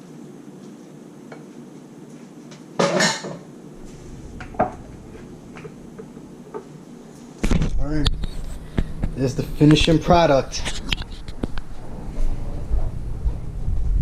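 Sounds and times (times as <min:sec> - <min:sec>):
pan and utensils clattering: 0:02.8 - 0:03.5.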